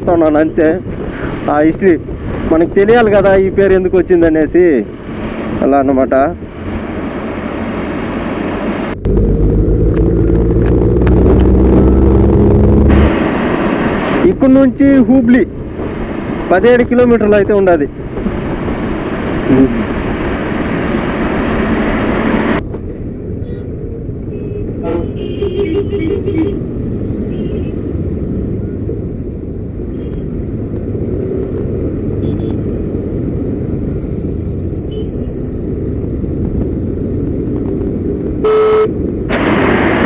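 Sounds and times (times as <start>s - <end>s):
wind and road rumble: 0.0s - 40.0s
vehicle horns tooting: 24.3s - 26.6s, 27.3s - 27.8s, 32.2s - 32.6s, 34.9s - 35.4s, 38.4s - 39.0s.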